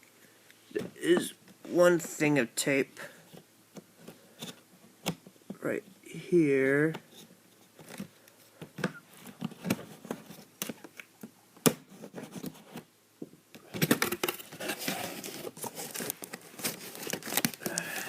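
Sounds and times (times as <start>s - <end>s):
packaging tearing and crinkling: 13.8s - 18.0s.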